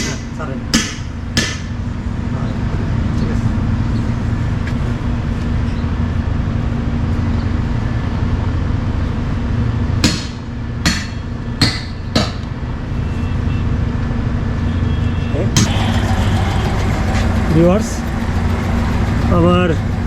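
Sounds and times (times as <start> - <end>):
steady low hum: 15.6 - 20.0.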